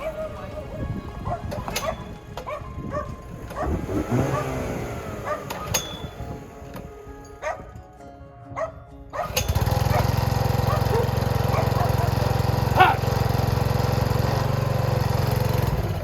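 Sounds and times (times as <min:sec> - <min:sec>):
dog barking: 0:00.0 - 0:05.9, 0:07.4 - 0:07.7, 0:08.6 - 0:13.1
small engine running: 0:00.0 - 0:07.7, 0:09.2 - 0:16.0
quiet background music: 0:00.0 - 0:09.8.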